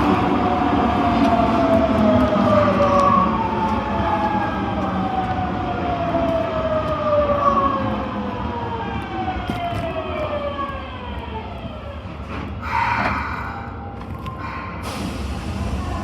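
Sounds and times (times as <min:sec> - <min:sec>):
subway traction motors whining: 0:00.0 - 0:16.0
hiss burst: 0:14.4 - 0:16.0.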